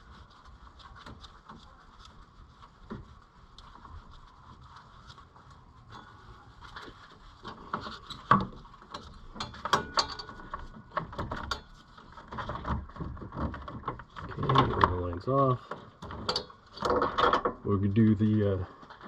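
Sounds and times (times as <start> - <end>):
wrench clinking on metal fittings: 9.4 - 10.4, 16.2 - 16.6.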